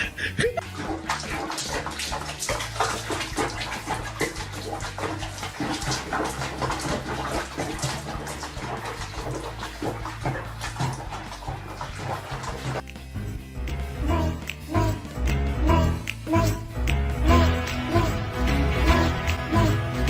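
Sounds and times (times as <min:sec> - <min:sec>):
water splashing and running: 0:00.0 - 0:13.3
background music: 0:00.0 - 0:20.0.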